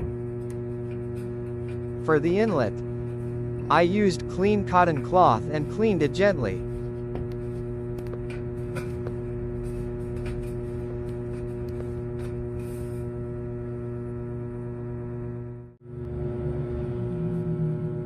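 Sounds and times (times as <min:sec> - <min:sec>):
ambient drone music: 0:15.8 - 0:18.0.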